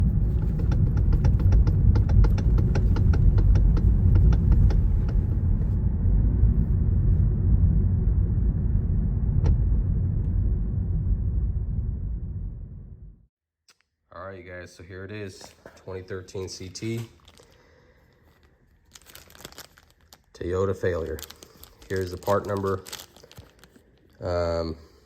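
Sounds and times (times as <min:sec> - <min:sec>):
car road and cabin rumble: 0:00.0 - 0:13.0
rapid clicking rattle from steering: 0:00.2 - 0:05.4.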